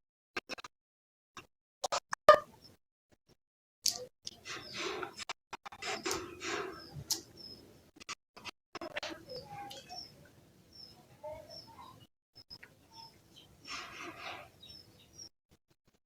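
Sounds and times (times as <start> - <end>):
birds chirping: 4.3 - 5.2, 5.8 - 7.9, 8.8 - 15.3
rustling and scratching: 4.3 - 10.1, 12.9 - 14.8.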